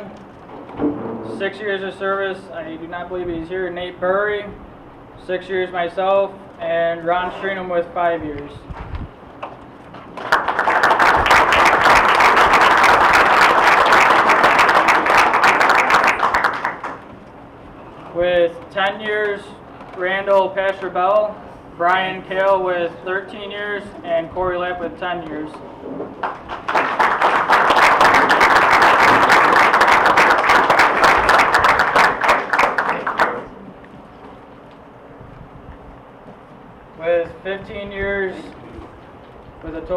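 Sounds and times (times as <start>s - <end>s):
audience applauding: 10.1s - 17.0s, 26.2s - 33.6s.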